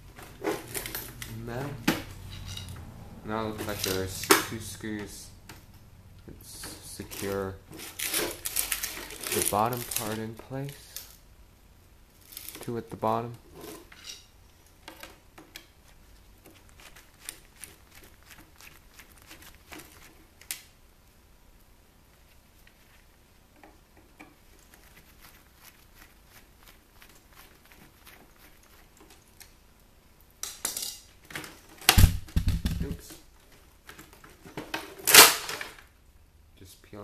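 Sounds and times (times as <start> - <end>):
parts clattering: 0.0 - 2.8, 3.4 - 5.7.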